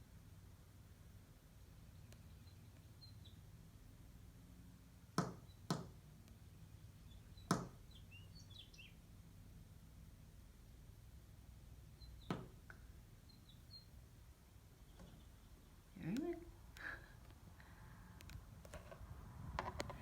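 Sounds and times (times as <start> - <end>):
finch chirping: 1.9 - 3.4, 6.8 - 9.0, 11.9 - 12.5, 13.2 - 14.0, 14.8 - 16.4.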